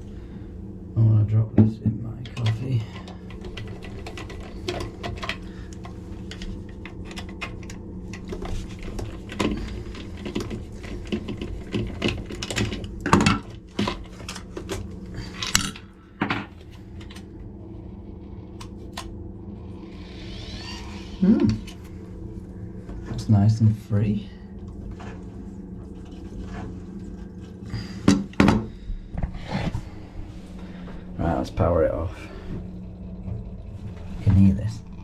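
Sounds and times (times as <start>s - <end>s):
steady low hum: 0.0s - 35.0s.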